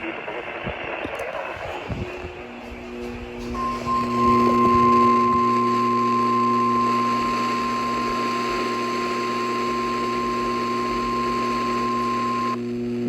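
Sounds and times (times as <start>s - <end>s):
low hum: 0.0s - 13.0s
radio static: 0.0s - 13.0s
steady alarm beep: 3.5s - 8.2s.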